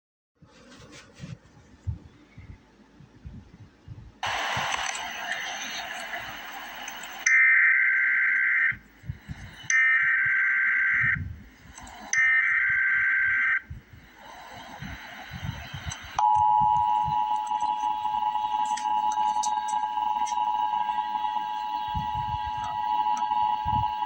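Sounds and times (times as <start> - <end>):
high-pitched buzzing data tones: 7.0 - 24.0
two-tone attention signal: 16.2 - 24.0.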